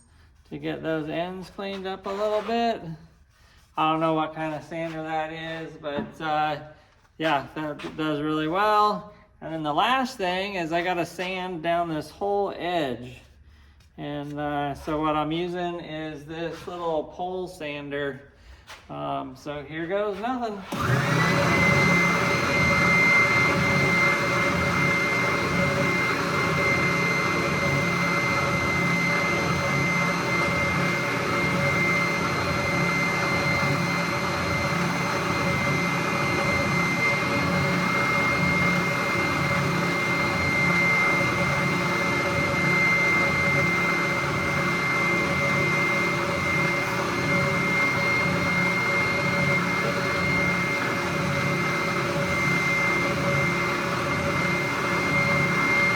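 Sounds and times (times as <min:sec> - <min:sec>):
sanding wood edge: 0:00.4 - 0:05.6
electric sander motor whine: 0:20.6 - 0:55.9.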